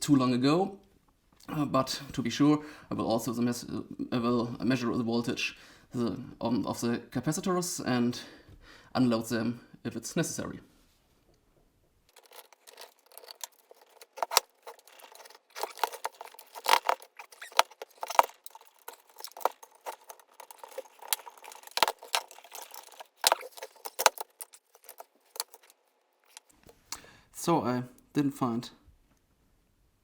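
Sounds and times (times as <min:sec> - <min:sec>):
metallic clicks and rattles: 0:12.1 - 0:27.0.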